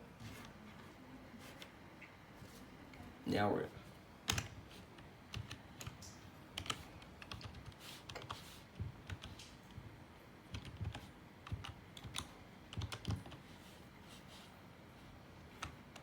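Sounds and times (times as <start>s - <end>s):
computer keyboard typing: 4.2s - 9.8s, 10.5s - 13.5s, 15.5s - 16.0s.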